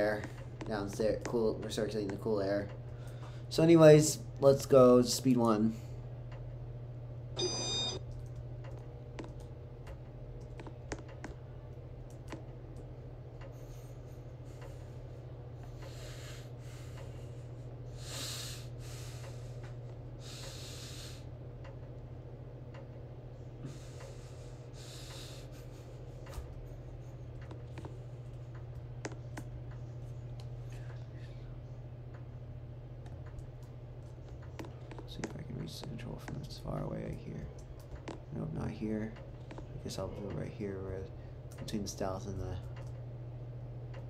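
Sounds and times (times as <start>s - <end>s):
ceiling fan motor hum: 0.0s - 44.0s.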